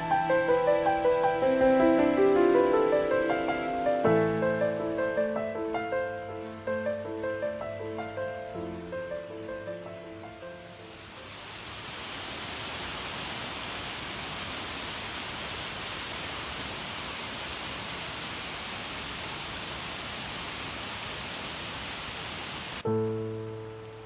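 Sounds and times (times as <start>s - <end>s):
music: 0.0s - 10.9s, 22.8s - 24.0s
waterfall roaring: 0.0s - 24.0s.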